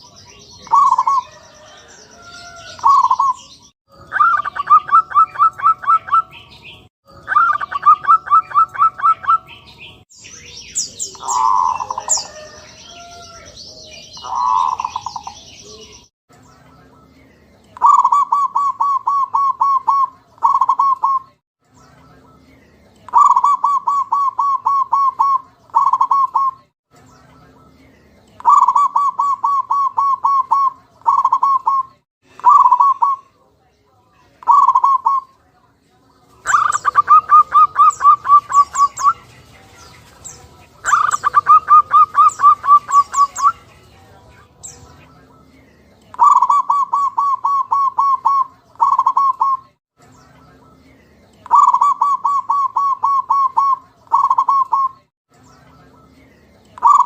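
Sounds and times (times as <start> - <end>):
dove cooing rapidly: 0.0 - 6.4, 7.2 - 9.6, 10.8 - 16.0, 17.8 - 21.3, 23.1 - 26.6, 28.4 - 33.3, 34.4 - 35.3, 36.4 - 39.3, 40.8 - 43.6, 46.2 - 49.7, 51.5 - 55.0, 56.8 - 57.0.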